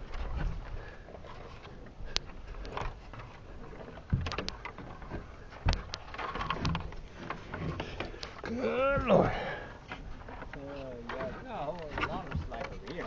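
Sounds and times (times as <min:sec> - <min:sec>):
gear thuds: 0:04.0 - 0:10.3.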